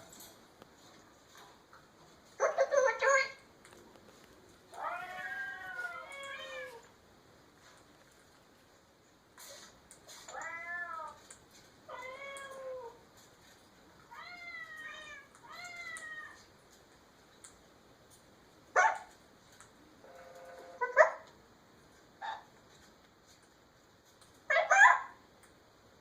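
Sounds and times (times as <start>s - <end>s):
cat meowing: 4.8s - 6.8s, 10.3s - 11.2s.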